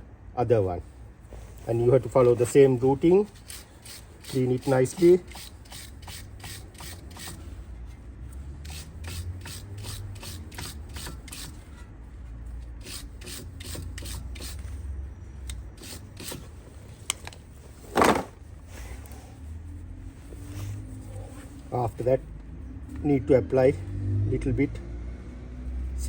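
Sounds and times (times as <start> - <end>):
rapid rubbing strokes on metal pin: 2.6 - 7.6, 8.6 - 11.8, 12.8 - 14.7.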